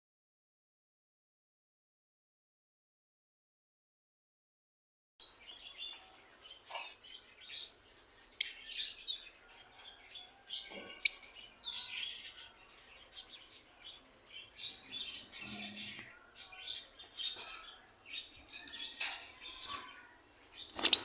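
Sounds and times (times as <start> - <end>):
birds chirping: 5.2 - 21.0.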